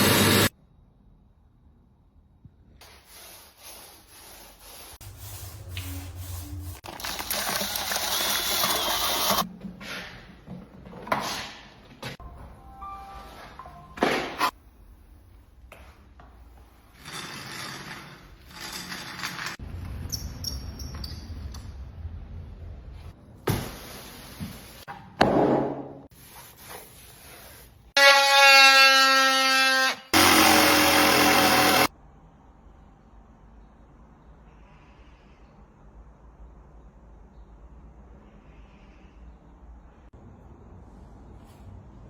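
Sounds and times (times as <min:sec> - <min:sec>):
power tool whining: 0:29.8 - 0:31.9.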